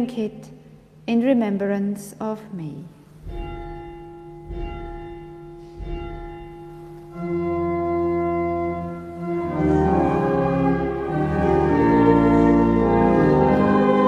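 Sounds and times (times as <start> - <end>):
church organ chord: 3.2 - 14.0.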